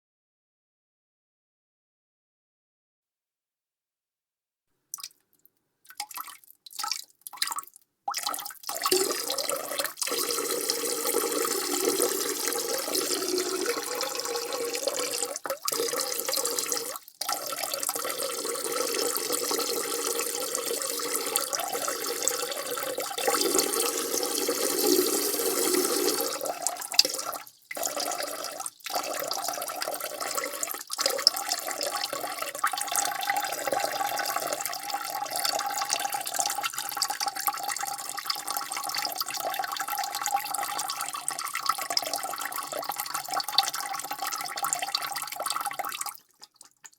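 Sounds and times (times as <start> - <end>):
man urinating into toilet: 4.9 - 46.9.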